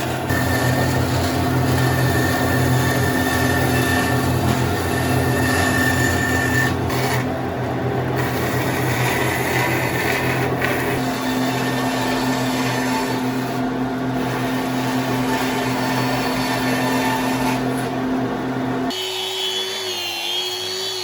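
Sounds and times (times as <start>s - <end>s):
power tool motor whirring: 0.0s - 7.3s.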